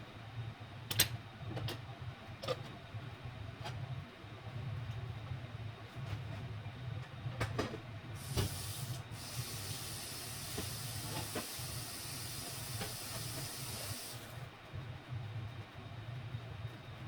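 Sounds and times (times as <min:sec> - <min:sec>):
food sizzling in a frying pan: 0:08.2 - 0:14.3.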